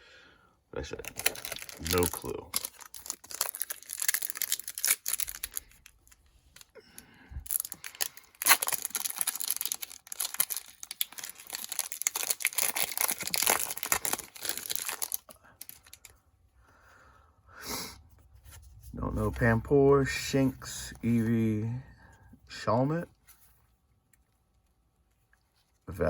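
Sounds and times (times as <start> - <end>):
foil wrapper tearing and crinkling: 1.0 - 6.7, 7.5 - 16.1.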